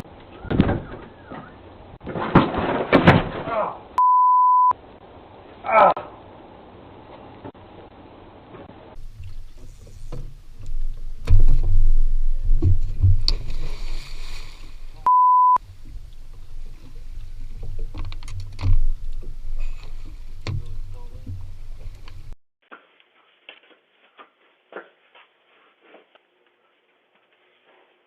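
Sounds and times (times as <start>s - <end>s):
censor bleep: 4.0s - 4.8s, 15.0s - 15.6s
knocks and thumps: 9.2s - 13.6s.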